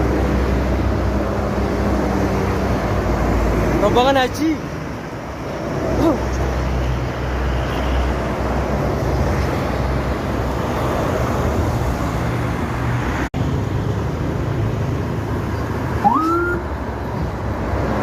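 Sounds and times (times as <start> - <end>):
bus engine rumble: 0.0 - 18.0
road traffic noise: 0.0 - 18.0.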